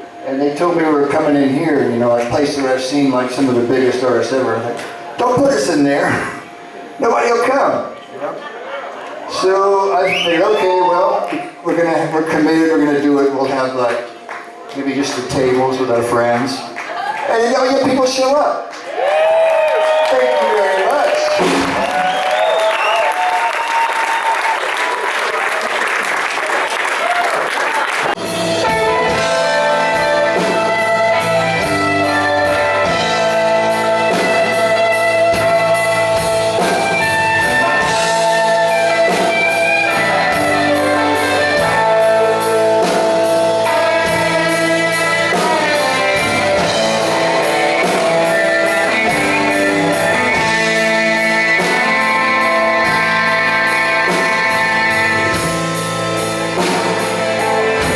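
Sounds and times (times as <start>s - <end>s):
rock band playing: 0.0s - 7.6s, 20.6s - 24.9s, 26.9s - 57.9s
audience applauding and cheering: 9.0s - 11.9s, 16.4s - 17.8s, 18.7s - 29.5s.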